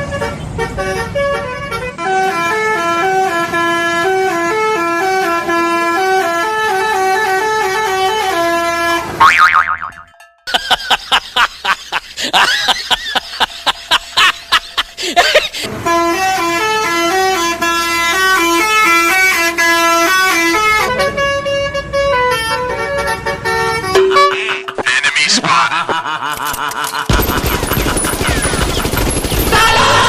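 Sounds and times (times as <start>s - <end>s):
multi-tone bus horn tune: 0.0s - 9.3s, 15.6s - 24.8s, 29.5s - 30.0s.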